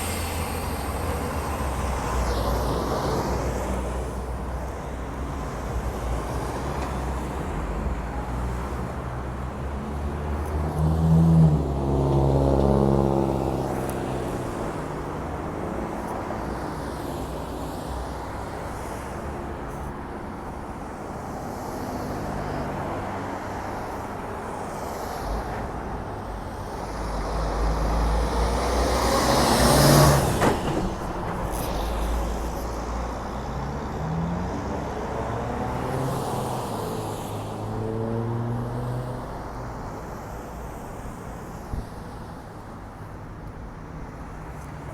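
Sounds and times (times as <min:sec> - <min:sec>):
vehicle engine drone: 0:00.0 - 0:06.5
traffic engine rumble: 0:00.0 - 0:37.6.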